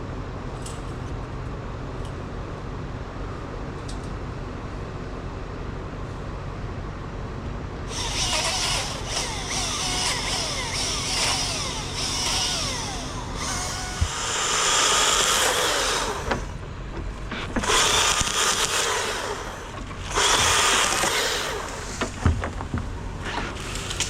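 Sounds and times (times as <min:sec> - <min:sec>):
chainsaw cutting wood: 0:07.9 - 0:16.6, 0:17.4 - 0:22.4.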